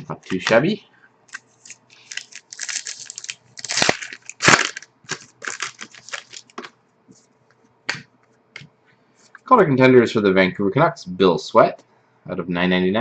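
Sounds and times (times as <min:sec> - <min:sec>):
packaging crunches: 0:01.3 - 0:06.7
plastic packaging crinkling: 0:01.3 - 0:06.7.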